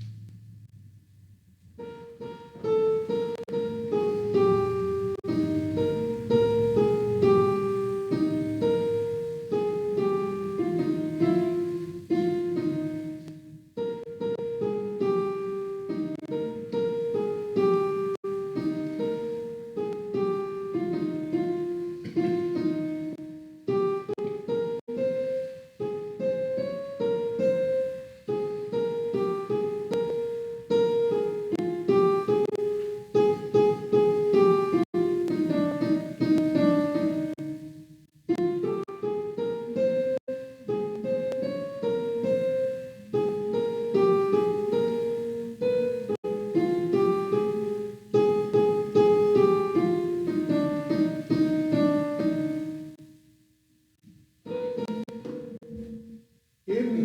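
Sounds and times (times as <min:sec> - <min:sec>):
piano playing hymn chords: 0:00.0 - 0:53.4, 0:54.4 - 0:57.0.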